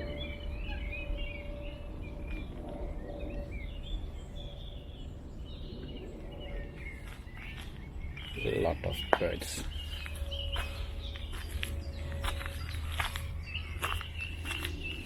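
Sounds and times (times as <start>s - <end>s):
songbirds singing and chirping: 0.0s - 15.0s
steady low rumble: 0.0s - 15.0s.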